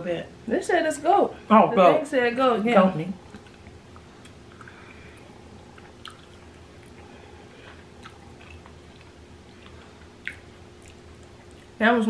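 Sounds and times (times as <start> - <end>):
low steady hum: 0.0 - 12.0
people chewing food: 3.3 - 11.8.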